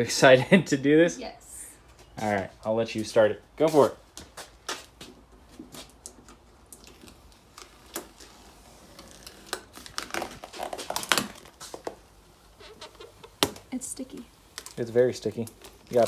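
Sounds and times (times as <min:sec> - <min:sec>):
vinyl film peeling and crackling: 0:05.7 - 0:16.0.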